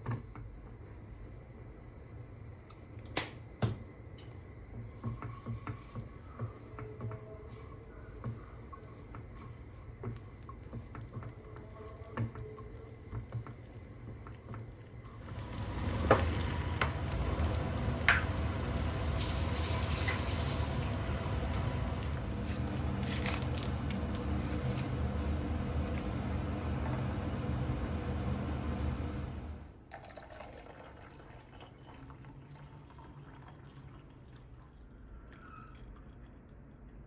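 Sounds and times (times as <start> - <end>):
water running into sink: 8.7 - 22.4.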